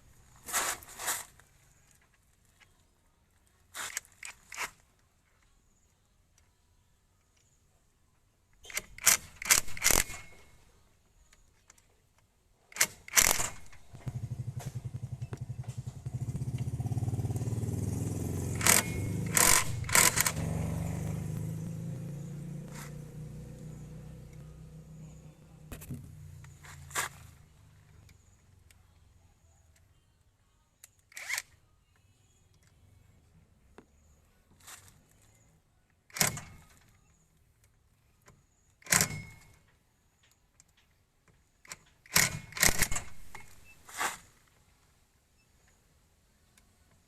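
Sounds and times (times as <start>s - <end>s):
small engine running: 13.1s - 25.8s, 42.2s - 43.5s
sharp clicks and knocks: 18.5s - 23.0s, 38.2s - 43.6s.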